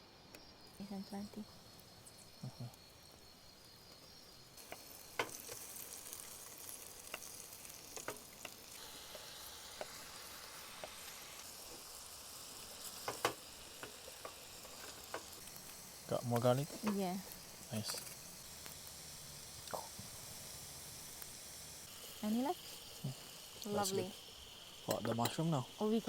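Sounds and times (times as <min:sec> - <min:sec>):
garlic sizzling in a pan: 0:00.0 - 0:26.0
utensil clicking against pan: 0:04.6 - 0:09.2, 0:13.0 - 0:15.4.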